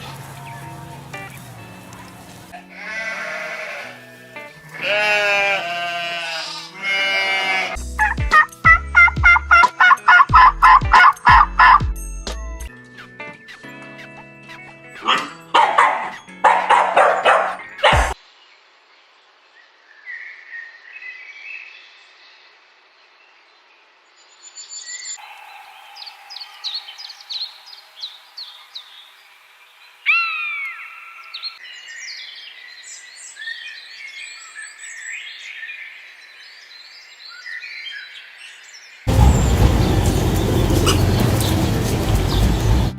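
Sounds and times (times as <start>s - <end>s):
birds chirping: 0.0s - 3.9s, 13.0s - 18.3s, 24.4s - 42.9s
dog barking: 15.0s - 18.2s
downward sweeping bird call: 24.9s - 29.2s, 39.1s - 42.9s.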